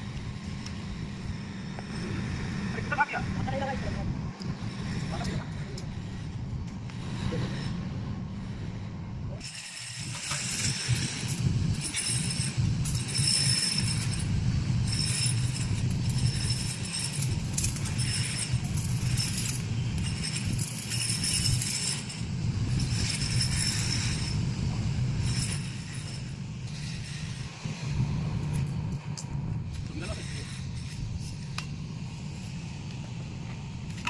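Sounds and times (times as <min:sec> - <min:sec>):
metallic ringing and clinking: 0:09.4 - 0:27.5.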